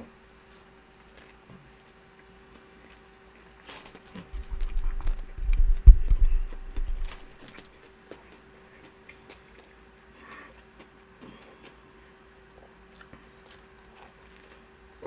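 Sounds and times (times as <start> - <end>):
faint steady hum: 0.0 - 15.0
chewing: 2.6 - 15.0
heavy low thuds: 4.4 - 7.5.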